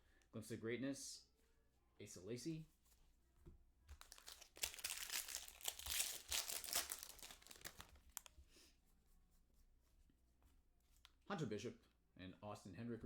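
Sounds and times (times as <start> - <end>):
foil wrapper crinkling and tearing: 4.0 - 8.4.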